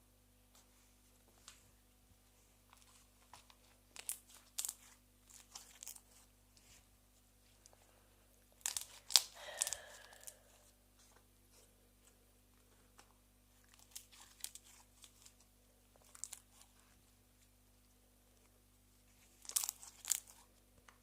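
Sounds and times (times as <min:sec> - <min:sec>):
slime crackling and popping: 0:03.9 - 0:06.0, 0:08.6 - 0:09.8, 0:19.3 - 0:20.4.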